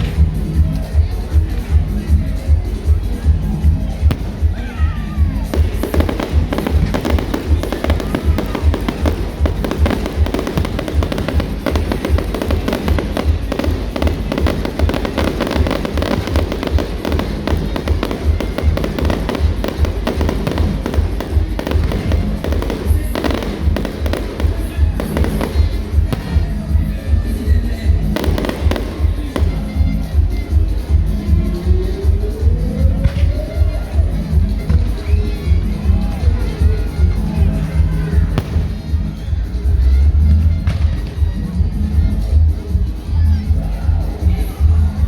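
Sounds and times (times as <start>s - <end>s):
loud music with heavy bass beat: 1.8s - 32.3s
fireworks crackling and banging: 4.0s - 31.1s, 38.2s - 39.8s.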